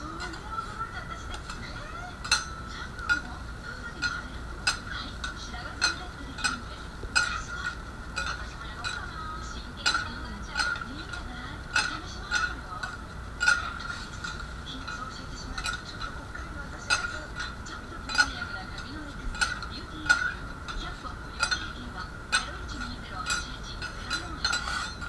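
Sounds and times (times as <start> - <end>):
metal spatulas clinking on griddle: 0.0 - 25.0.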